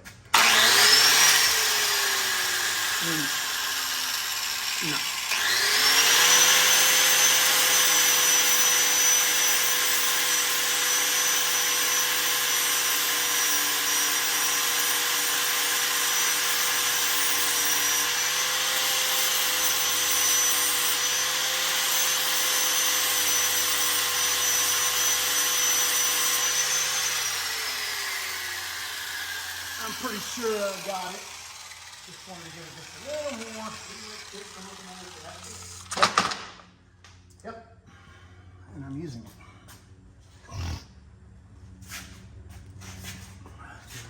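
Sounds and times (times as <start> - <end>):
rotary power tool whining: 0.3 - 36.6.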